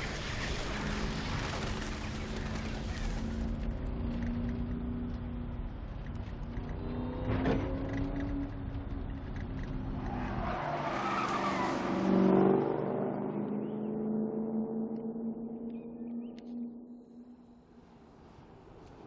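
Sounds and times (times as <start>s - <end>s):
tyre skid and squeal: 9.8s - 12.1s.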